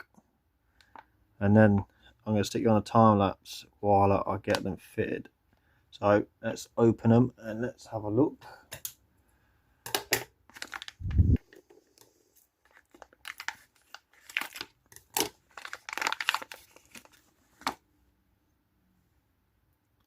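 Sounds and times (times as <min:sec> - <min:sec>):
packaging crinkling and tearing: 0:10.5 - 0:11.7, 0:12.6 - 0:17.8.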